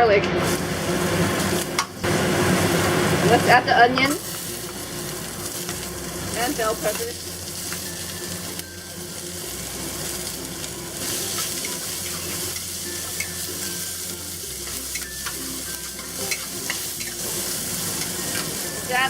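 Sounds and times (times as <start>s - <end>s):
vegetables sizzling in oil: 0.4s - 19.0s
stirring taps and scrapes: 14.5s - 18.5s.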